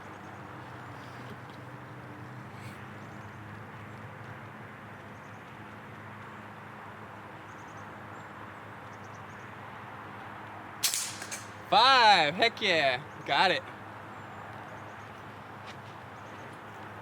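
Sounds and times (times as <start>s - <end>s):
outdoor background hum: 0.0s - 17.0s
air rifle firing: 10.8s - 11.7s.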